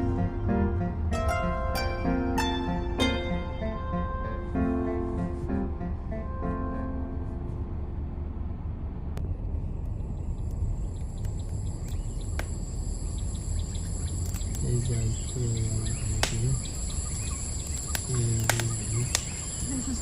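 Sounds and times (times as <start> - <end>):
sharp clicks: 9.8 - 19.7
high-pitched ringing: 11.4 - 20.0
person speaking: 14.6 - 16.6, 18.0 - 20.0.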